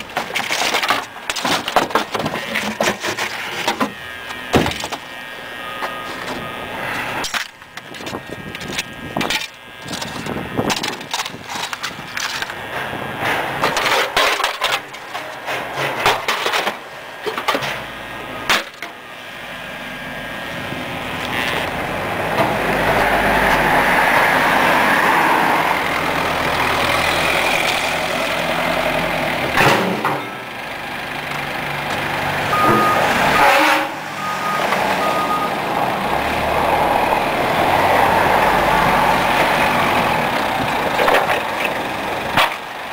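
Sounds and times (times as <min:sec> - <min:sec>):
clatter and knocks: 0:00.0 - 0:05.0
vehicle engine running: 0:00.0 - 0:42.9
short beeps: 0:32.5 - 0:33.6, 0:34.2 - 0:35.6.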